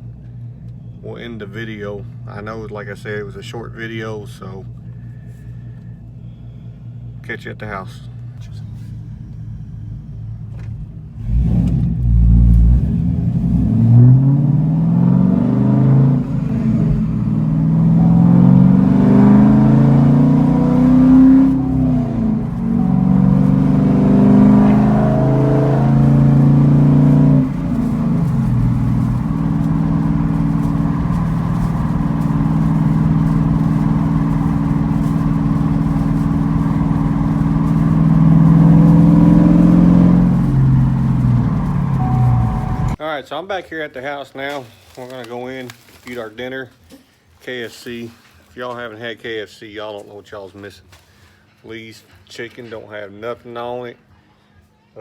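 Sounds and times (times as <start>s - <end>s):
car exhaust accelerating: 8.4s - 43.0s.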